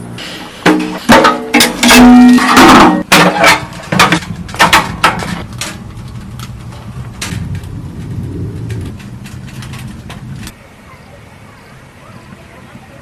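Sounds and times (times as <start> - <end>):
sharp knocks and clatters: 0.6 - 10.6
low steady rumble: 5.4 - 13.0.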